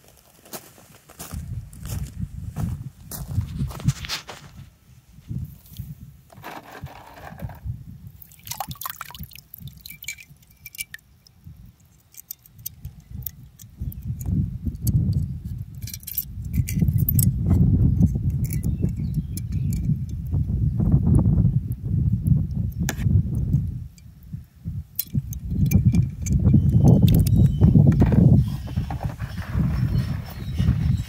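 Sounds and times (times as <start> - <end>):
light metallic clinks: 8.3 - 20.3, 25.0 - 27.6.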